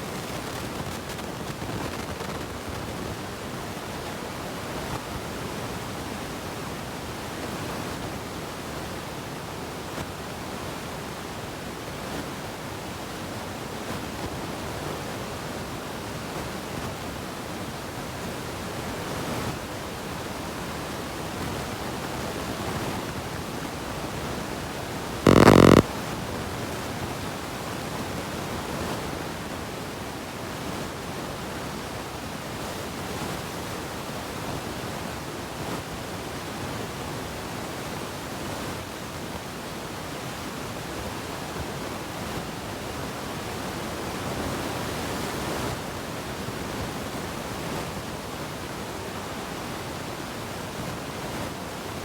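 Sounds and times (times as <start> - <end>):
steady hiss: 25.3 - 25.8.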